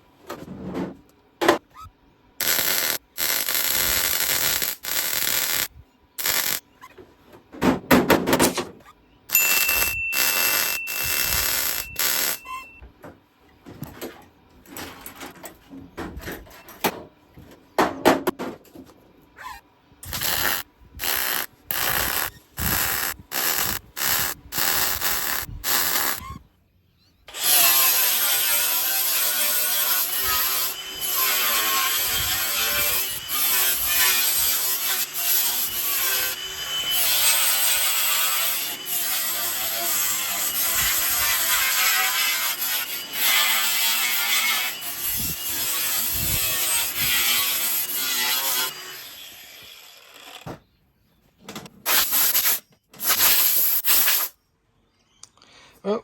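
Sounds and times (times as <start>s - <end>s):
welder stitch-weld bursts: 2.4s - 6.6s, 9.3s - 12.6s, 20.0s - 26.4s, 51.9s - 54.4s.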